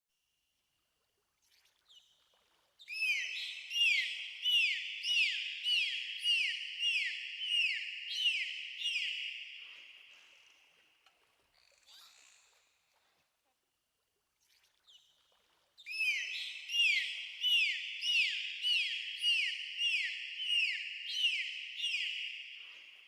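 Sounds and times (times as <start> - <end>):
dolphin whistling chirps: 15.9 - 22.4.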